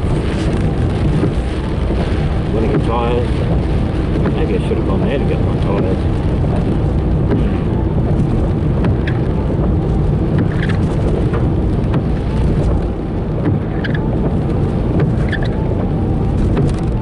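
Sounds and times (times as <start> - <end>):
rain pattering on car: 0.0 - 17.0
road and engine rumble: 0.0 - 17.0
faint short squeaks: 15.2 - 15.6.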